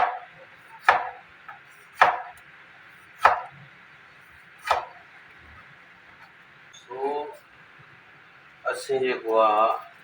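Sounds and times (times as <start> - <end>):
knife chopping cucumber on board: 0.0 - 2.4, 3.2 - 3.5, 4.6 - 5.0.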